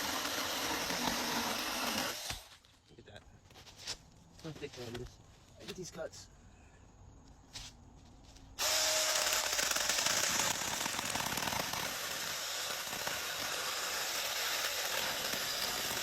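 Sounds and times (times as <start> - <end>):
mini chainsaw cutting wood: 0.0 - 2.5, 8.6 - 16.0.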